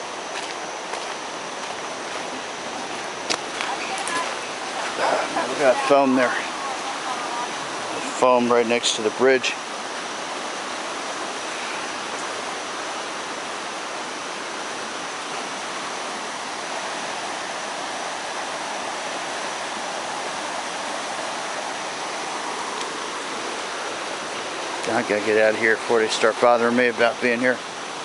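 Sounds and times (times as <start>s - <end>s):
flooded river rushing: 0.0s - 28.0s.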